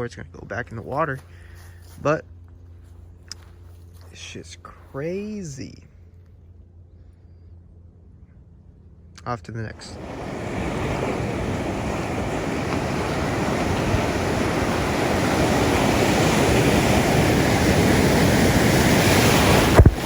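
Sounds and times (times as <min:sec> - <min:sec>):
wind: 0:00.0 - 0:20.0
surf: 0:09.7 - 0:20.0
sharp thump: 0:19.7 - 0:20.0.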